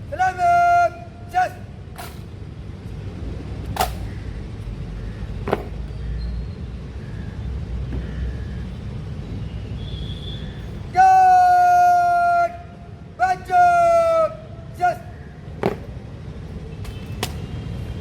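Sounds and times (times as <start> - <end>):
sharp knocks: 5.4 - 5.8, 15.6 - 16.0.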